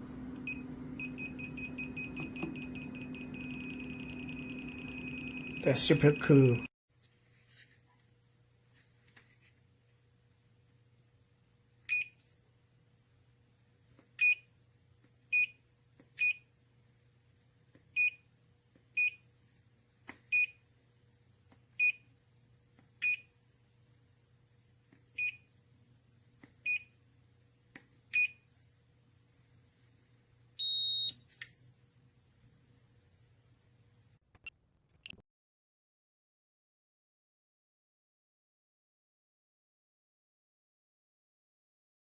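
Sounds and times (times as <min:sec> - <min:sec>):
multimeter short beeps: 0:16.2 - 0:16.4, 0:28.1 - 0:28.4, 0:30.6 - 0:31.2.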